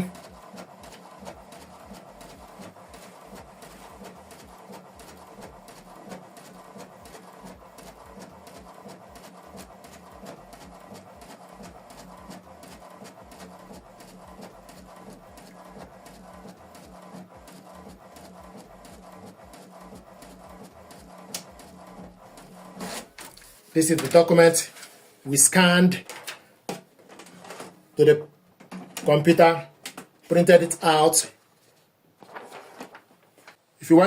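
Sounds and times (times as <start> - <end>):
inkjet printer printing: 0.0 - 25.0, 26.1 - 27.8
small printer clicks: 21.1 - 22.1.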